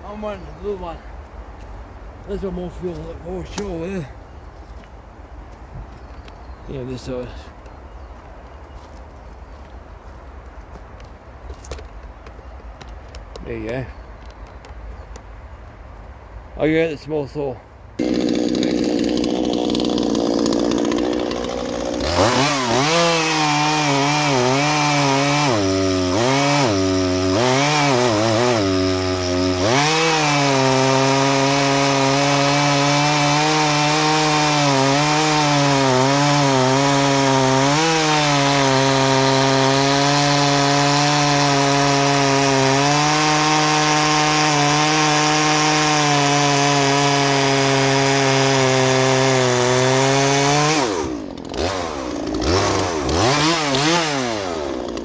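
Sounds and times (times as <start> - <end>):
chainsaw revving and cutting wood: 18.0 - 55.0.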